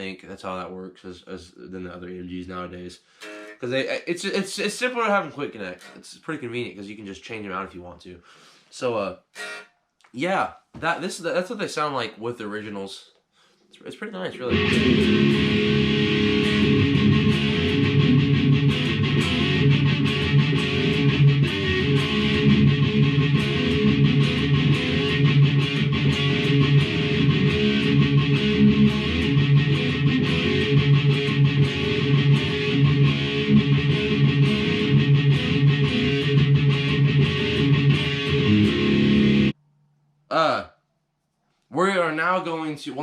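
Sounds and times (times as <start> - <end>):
electric guitar riffs and chords: 3.2 - 3.6, 14.4 - 39.6.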